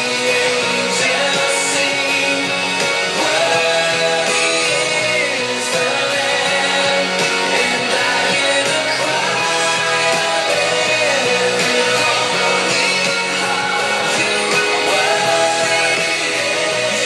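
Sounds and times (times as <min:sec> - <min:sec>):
guitar-led rock band music: 0:00.0 - 0:17.0.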